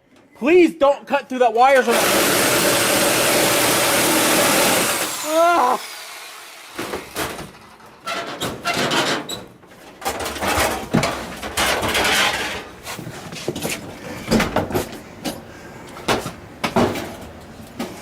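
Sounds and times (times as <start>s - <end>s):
appliance knocks and clatters: 8.2s - 12.7s, 13.4s - 15.0s, 16.1s - 17.3s.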